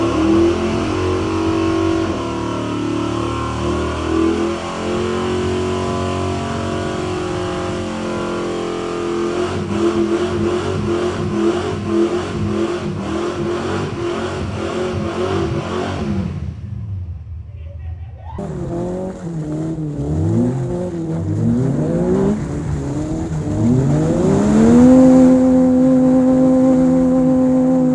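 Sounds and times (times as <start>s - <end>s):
car engine revving: 18.4s - 27.9s.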